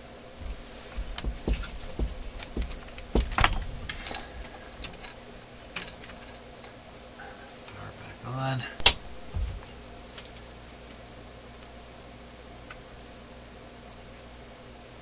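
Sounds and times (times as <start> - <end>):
plug clicking and knocking: 0.4 - 5.2.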